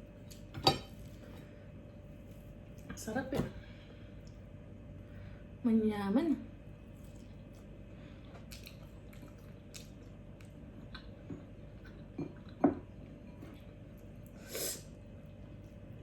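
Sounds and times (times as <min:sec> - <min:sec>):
wet chewing and mouth sounds: 0:06.9 - 0:14.4.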